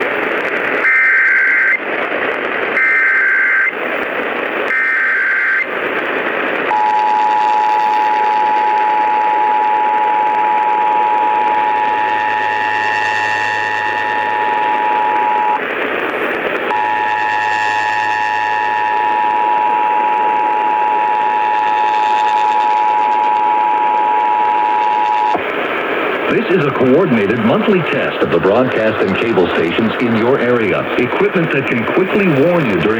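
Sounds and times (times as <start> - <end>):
radio static hiss: 0.0 - 32.9
warbling data tones: 2.7 - 3.8, 6.7 - 15.7, 16.7 - 25.4.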